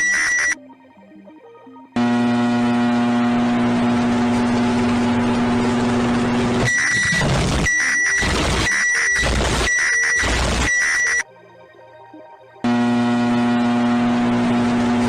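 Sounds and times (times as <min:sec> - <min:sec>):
high-pitched alarm beeps: 0:00.0 - 0:00.6, 0:06.7 - 0:11.2
low buzzing horn alarm: 0:02.0 - 0:11.2, 0:12.6 - 0:15.0.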